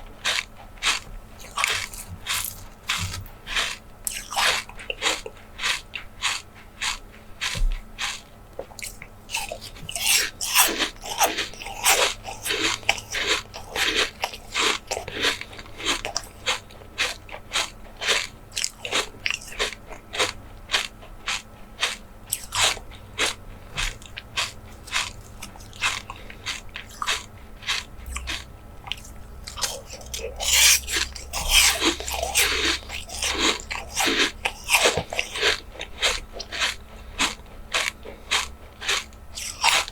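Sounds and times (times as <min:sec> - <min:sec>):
biting and chewing jelly: 0:00.0 - 0:39.9.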